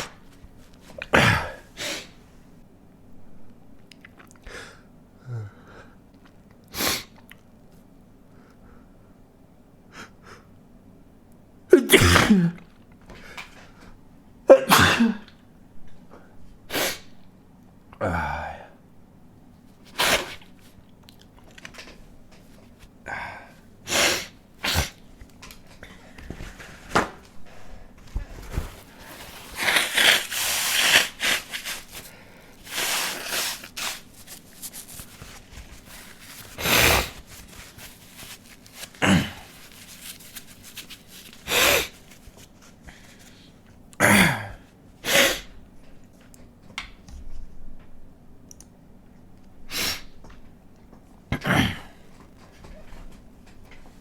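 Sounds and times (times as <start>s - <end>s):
man sneezing: 1.0s - 2.2s, 11.7s - 12.7s, 14.5s - 15.4s, 38.9s - 39.6s, 44.0s - 45.6s, 51.3s - 52.0s
sharp breaths and sniffs: 28.4s - 42.2s.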